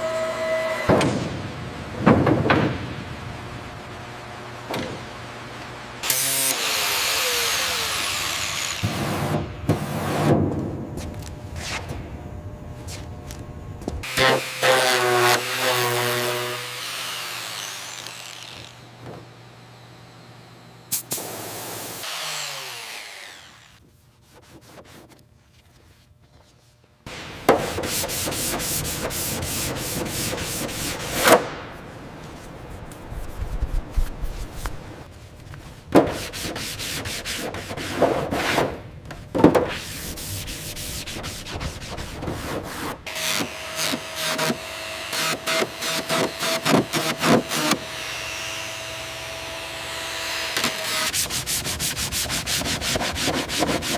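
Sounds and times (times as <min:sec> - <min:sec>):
rubbing and scraping strokes: 0:24.0 - 0:26.8, 0:27.6 - 0:31.4, 0:32.2 - 0:35.1, 0:35.7 - 0:38.6, 0:39.6 - 0:43.1, 0:50.8 - 0:53.9.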